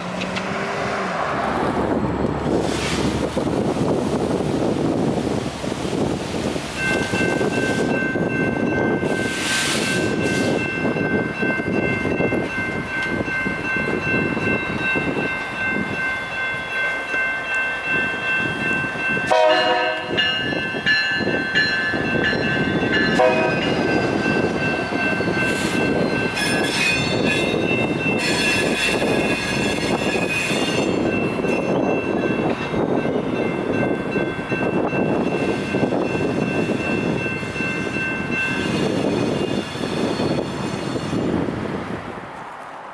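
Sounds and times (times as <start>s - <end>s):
train rumbling: 0.0s - 42.9s
crossing warning bell ringing: 3.3s - 41.3s
train horn: 19.3s - 20.4s, 23.1s - 24.0s.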